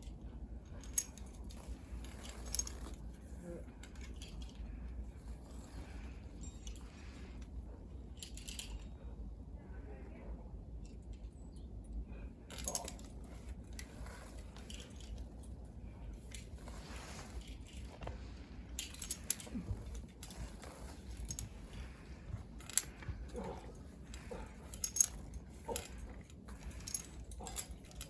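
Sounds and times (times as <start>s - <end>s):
metal carabiners clinking: 0.0s - 9.3s, 10.8s - 28.0s
low steady rumble: 0.0s - 28.0s.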